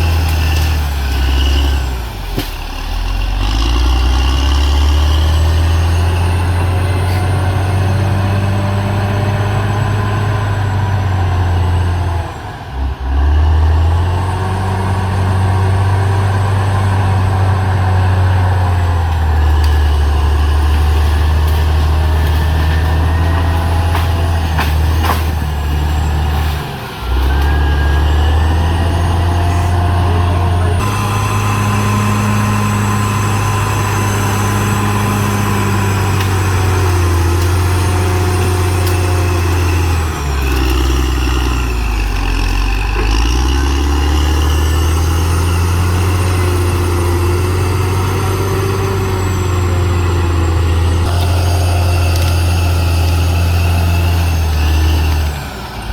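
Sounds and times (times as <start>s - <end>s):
bulldozer diesel engine working: 0.0s - 55.9s.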